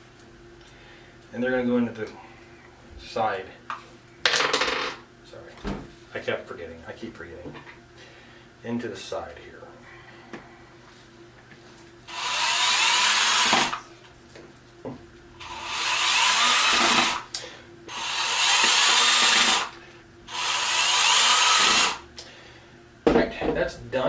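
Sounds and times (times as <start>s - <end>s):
power drill driving fasteners: 12.1s - 13.8s, 15.4s - 17.3s, 17.9s - 22.0s.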